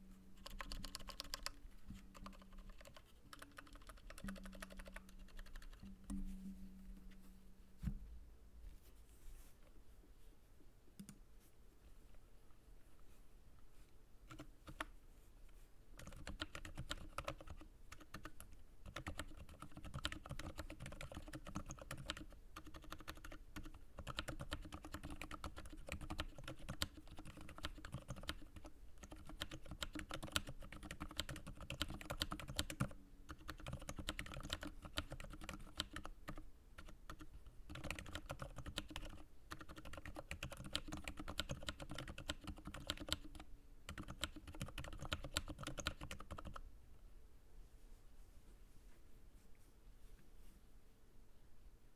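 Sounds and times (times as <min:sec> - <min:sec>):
soft mechanical keyboard typing: 0:00.4 - 0:06.2, 0:11.0 - 0:11.2, 0:14.2 - 0:14.9, 0:16.0 - 0:46.6.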